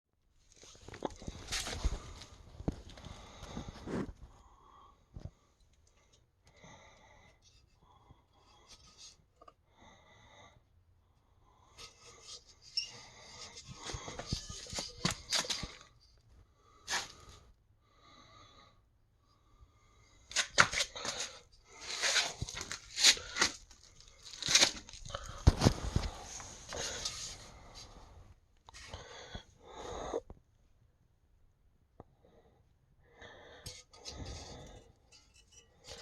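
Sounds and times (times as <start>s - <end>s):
faint short squeaks: 12.6s - 13.1s.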